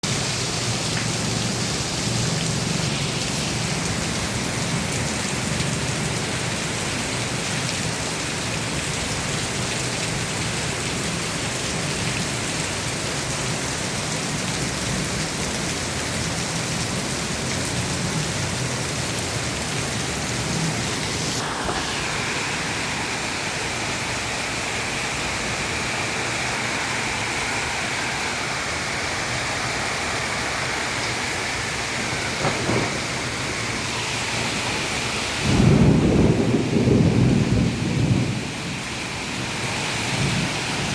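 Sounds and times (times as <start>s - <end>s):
heavy rain pouring: 0.0s - 40.9s
high hiss: 21.0s - 23.1s.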